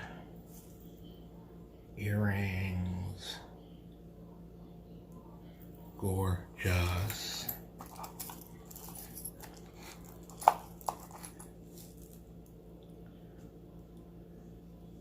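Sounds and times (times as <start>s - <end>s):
jewelry and packaging handled: 0.5s - 1.0s, 7.0s - 12.5s.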